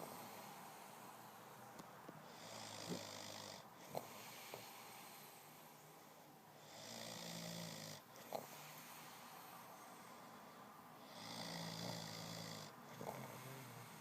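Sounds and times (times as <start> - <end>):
man snoring heavily: 2.3 - 5.3, 6.6 - 9.0, 11.0 - 14.0.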